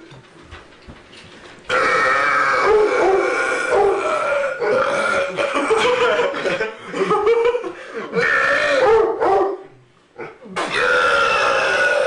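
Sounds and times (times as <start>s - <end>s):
man belching loudly: 1.7s - 5.9s, 8.1s - 8.9s, 10.6s - 12.0s.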